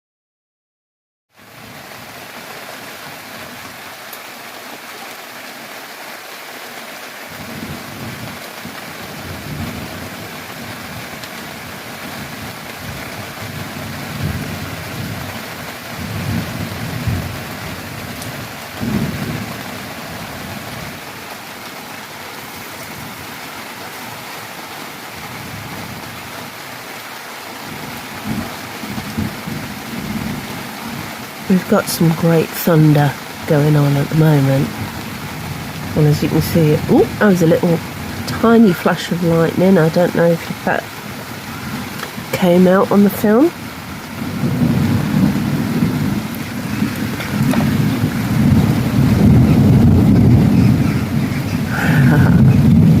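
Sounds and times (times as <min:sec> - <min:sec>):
steady rain falling: 0:01.3 - 0:53.0
thunder rumbling: 0:07.3 - 0:21.6, 0:27.6 - 0:53.0.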